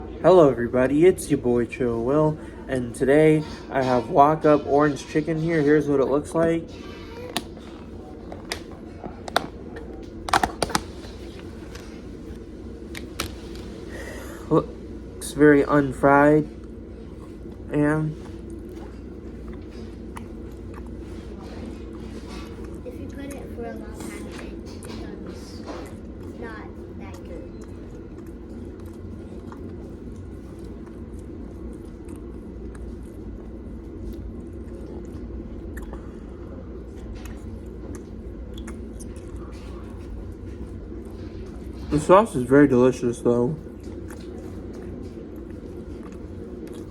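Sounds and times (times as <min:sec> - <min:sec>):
low steady hum: 0:00.0 - 0:46.9
person chewing wetly: 0:06.7 - 0:15.1, 0:16.6 - 0:25.0, 0:25.6 - 0:42.0, 0:43.6 - 0:46.9.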